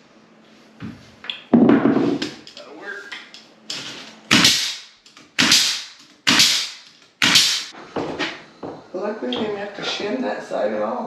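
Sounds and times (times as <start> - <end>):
nail gun shots: 4.3 - 7.7.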